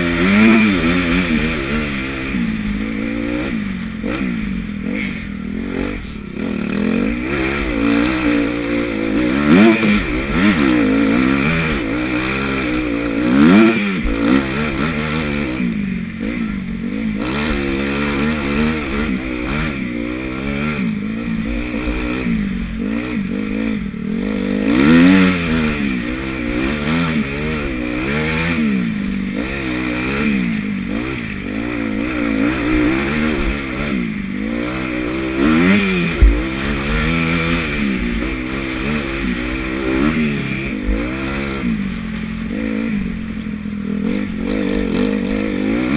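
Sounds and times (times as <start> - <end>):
motocross engine revving: 0.0 - 45.9
sharp thump: 36.1 - 36.7.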